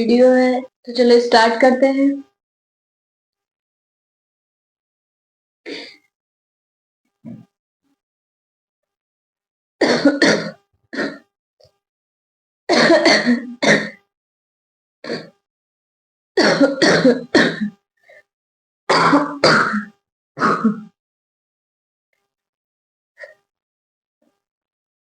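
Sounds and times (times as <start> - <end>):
person coughing: 5.7 - 6.0, 9.8 - 11.2, 12.7 - 14.0, 15.1 - 15.3, 16.4 - 17.7, 18.9 - 20.9.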